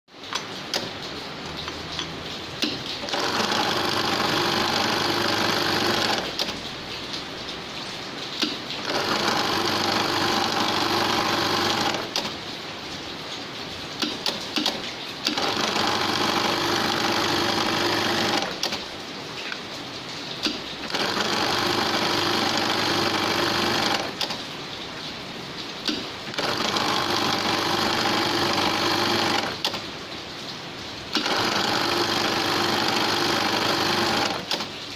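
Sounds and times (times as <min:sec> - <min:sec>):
sewing machine fast stitching: 0:02.6 - 0:06.6, 0:08.8 - 0:12.3, 0:14.6 - 0:18.8, 0:20.8 - 0:24.4, 0:26.3 - 0:29.8, 0:31.1 - 0:34.7.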